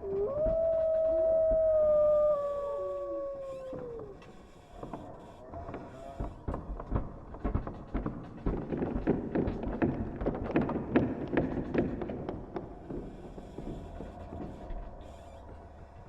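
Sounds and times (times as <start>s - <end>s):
wolf-like howl: 0.0s - 6.1s
knocks and clatters: 4.8s - 15.6s.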